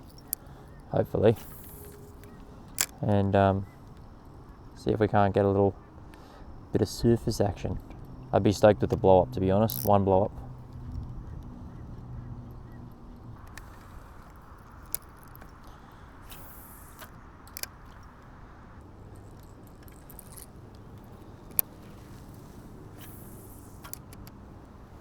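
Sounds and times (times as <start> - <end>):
sharp clicks: 0.0 - 4.8, 7.7 - 25.0
short hisses: 15.7 - 17.2.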